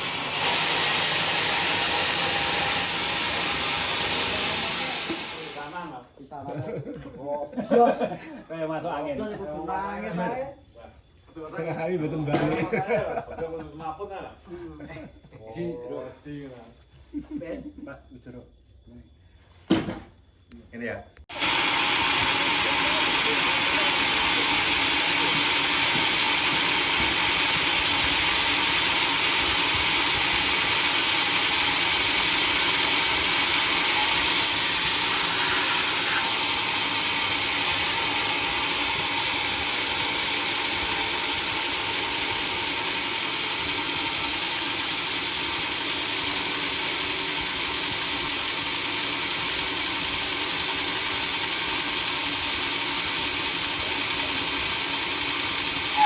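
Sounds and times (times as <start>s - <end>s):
sawmill machinery hissing: 0.0s - 6.0s, 21.3s - 56.0s.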